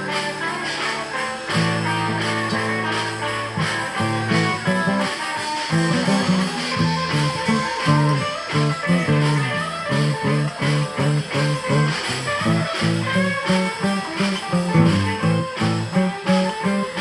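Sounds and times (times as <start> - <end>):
guitar: 0.0 - 17.0
live blues band: 0.0 - 17.0
steady drum beat: 0.0 - 17.0
walking bass: 0.0 - 17.0.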